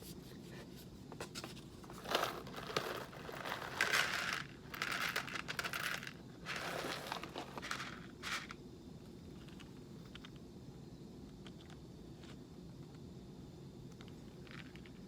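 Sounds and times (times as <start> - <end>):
coffee bag crinkling: 1.9 - 8.5.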